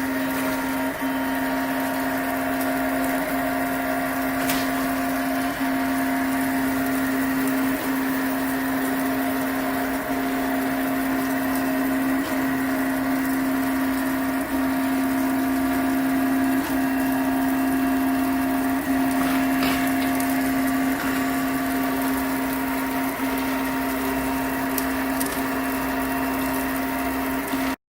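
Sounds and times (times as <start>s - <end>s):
printer stepper motors whining: 0.0s - 27.8s.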